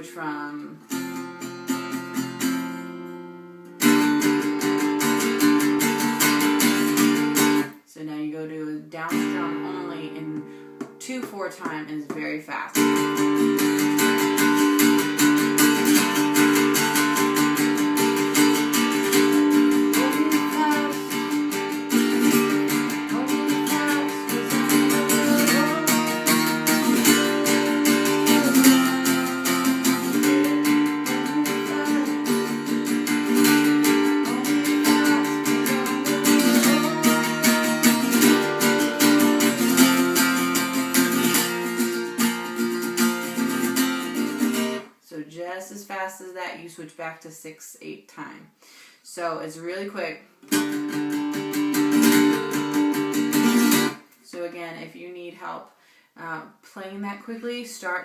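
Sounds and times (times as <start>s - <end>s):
acoustic guitar strummed fast: 3.8s - 7.7s, 12.8s - 44.8s, 50.5s - 54.0s.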